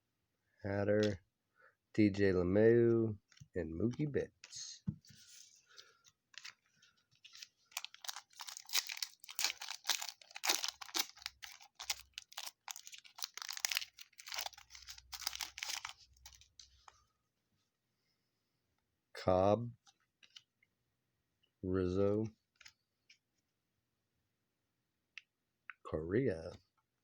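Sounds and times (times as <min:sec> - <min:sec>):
foil wrapper tearing and crackling: 0:07.2 - 0:16.5.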